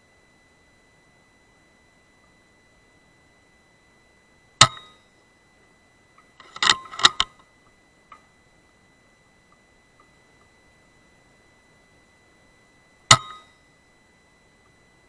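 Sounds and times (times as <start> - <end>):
metallic clicks of rifle action: 6.4 - 7.4.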